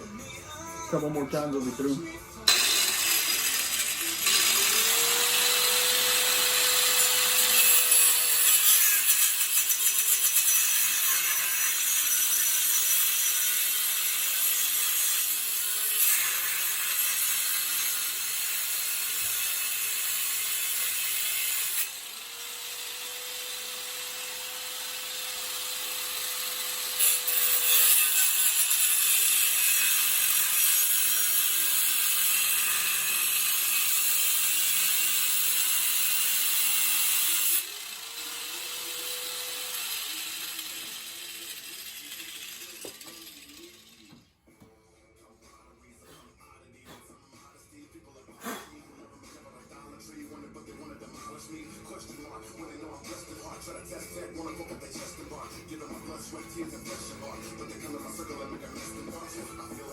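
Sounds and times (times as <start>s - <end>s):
grinder motor whine: 2.5s - 7.6s
angle grinder cutting steel: 2.5s - 44.2s.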